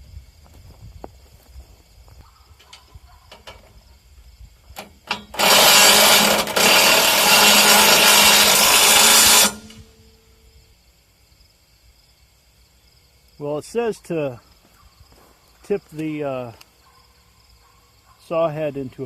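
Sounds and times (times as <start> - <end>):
power drill running: 5.1 - 9.9.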